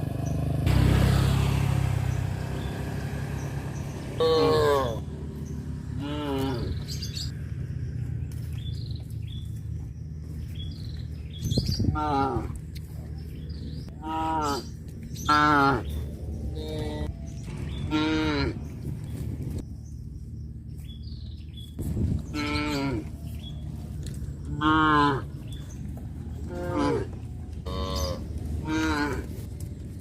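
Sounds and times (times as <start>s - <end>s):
steady low rumble: 1.8s - 14.0s, 14.6s - 30.0s
cattle mooing: 4.2s - 5.1s, 5.9s - 7.0s, 11.9s - 12.6s, 13.9s - 17.1s, 17.8s - 18.7s, 22.3s - 23.1s, 24.5s - 25.6s, 26.4s - 29.4s.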